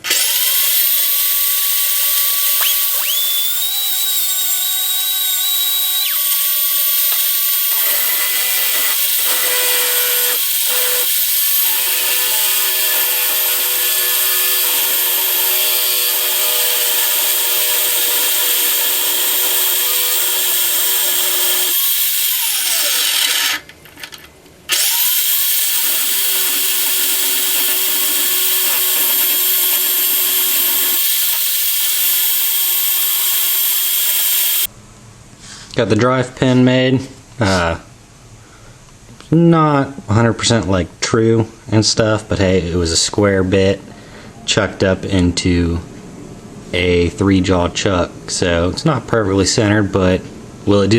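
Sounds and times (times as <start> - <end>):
power tool motor whine: 0.0 - 23.6, 24.7 - 34.7
metal cutting noise: 0.0 - 23.7, 24.7 - 34.7.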